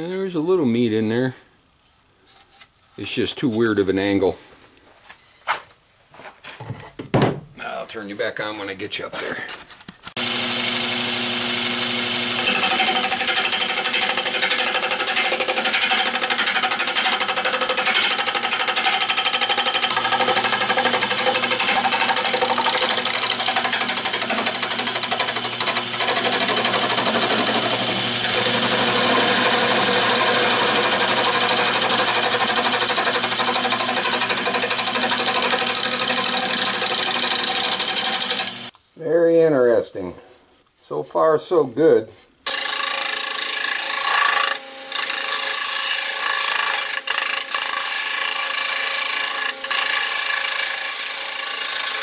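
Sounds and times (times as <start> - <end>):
tool cutting spinning wood: 10.1 - 38.7, 42.5 - 52.0
lathe motor hum: 10.2 - 38.7, 42.5 - 52.0.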